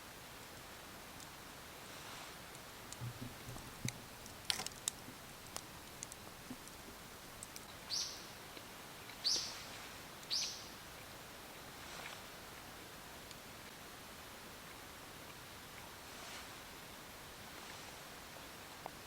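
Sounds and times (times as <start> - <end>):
light clicks and crackles: 0.4 - 1.4, 2.2 - 7.8
bird calling: 7.9 - 8.3, 9.2 - 9.7, 10.3 - 10.7.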